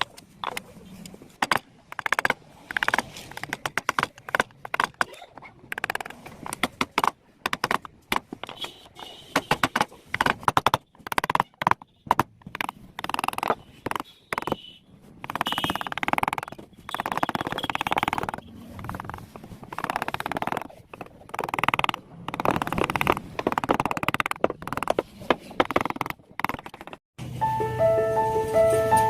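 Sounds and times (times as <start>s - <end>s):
hand tool rasping wood: 1.4s - 8.6s, 9.3s - 27.0s
piano music: 27.2s - 29.0s.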